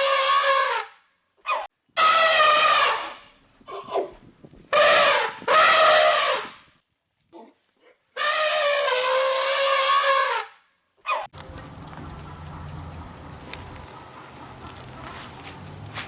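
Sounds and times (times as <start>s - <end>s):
loud animal calls: 11.1s - 15.8s.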